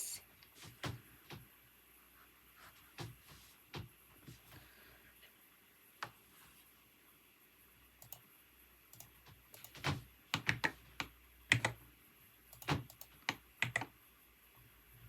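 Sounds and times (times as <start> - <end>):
computer keyboard typing: 8.0 - 8.2, 8.9 - 11.8, 12.5 - 13.9.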